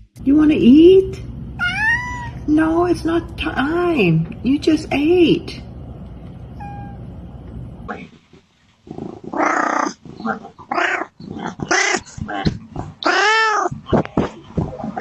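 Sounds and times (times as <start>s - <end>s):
cat meowing: 1.6s - 2.4s, 6.6s - 7.0s, 13.0s - 13.7s.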